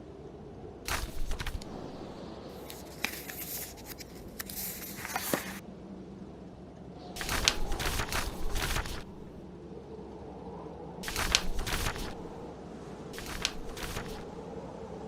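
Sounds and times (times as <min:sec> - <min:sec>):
book pages turning: 0:00.9 - 0:05.6, 0:07.2 - 0:09.4, 0:11.0 - 0:12.4, 0:13.2 - 0:14.4.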